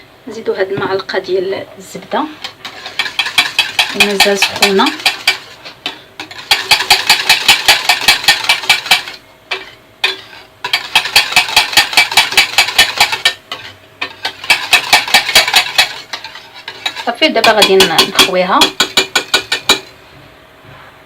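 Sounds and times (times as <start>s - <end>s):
utensil stirring thick cream in pot: 2.4s - 19.9s.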